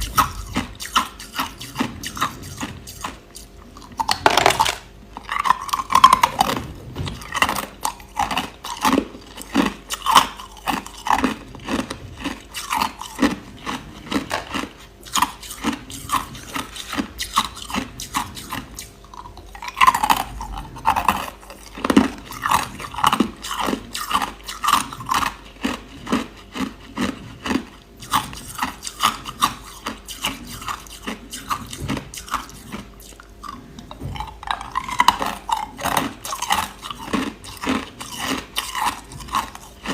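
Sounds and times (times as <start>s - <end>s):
person chewing crushed ice: 0.0s - 39.9s.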